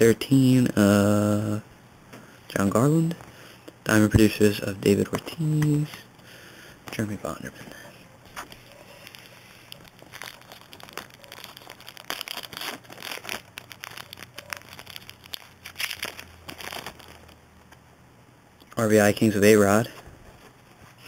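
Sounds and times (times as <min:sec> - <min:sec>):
wrapper crinkling: 0:08.3 - 0:17.7.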